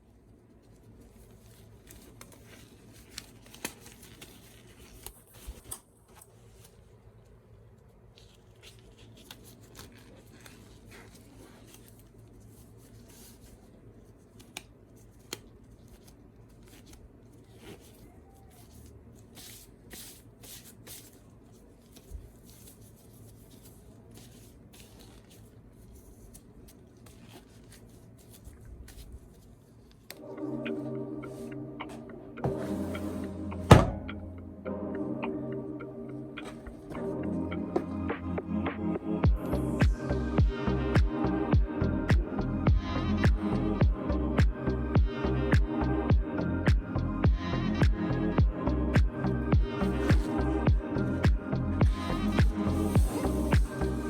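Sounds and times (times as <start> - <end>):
soft packaging rustling: 0.0 - 33.7.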